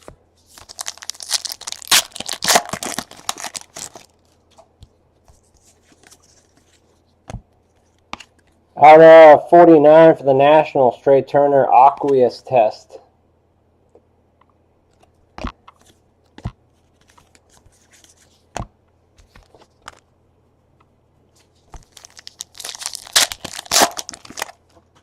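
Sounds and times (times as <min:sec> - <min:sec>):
foil wrapper tearing and crinkling: 0:00.5 - 0:04.2, 0:21.8 - 0:24.6.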